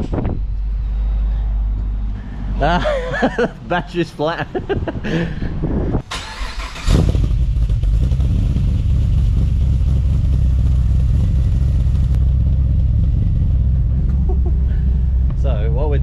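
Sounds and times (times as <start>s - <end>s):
vehicle engine starting and idling: 6.0s - 16.0s.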